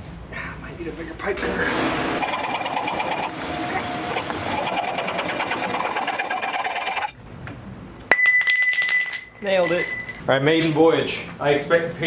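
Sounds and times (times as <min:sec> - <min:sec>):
pipe cutter scraping around pipe: 0:01.7 - 0:07.2.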